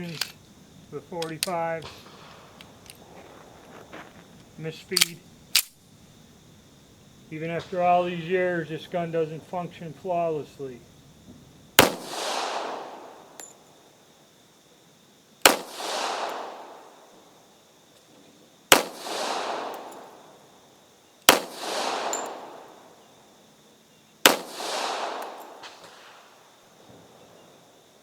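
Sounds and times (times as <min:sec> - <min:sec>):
pistol shots with echo: 0:11.8 - 0:13.4, 0:15.4 - 0:17.0, 0:18.7 - 0:20.4, 0:21.3 - 0:23.0, 0:24.2 - 0:27.1.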